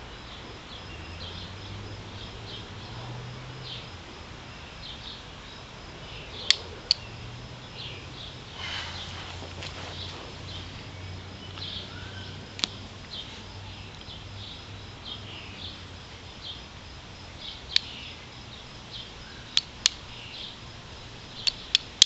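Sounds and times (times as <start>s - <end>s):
birds chirping faintly: 0.0s - 22.0s
knife striking flint clicks: 21.4s - 22.0s.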